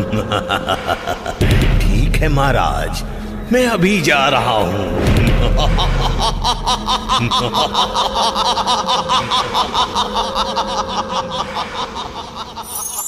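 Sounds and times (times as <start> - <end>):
man laughing villainously: 0.0 - 1.7, 4.6 - 13.0
steady held drone: 0.0 - 13.0.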